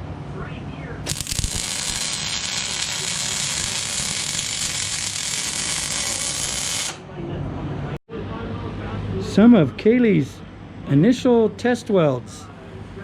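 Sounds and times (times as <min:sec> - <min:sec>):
electric welding arc crackling hiss: 0:01.1 - 0:07.0.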